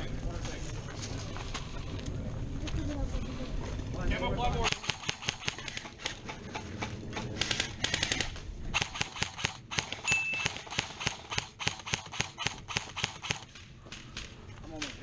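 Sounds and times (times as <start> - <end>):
airsoft guns firing: 4.6 - 15.0.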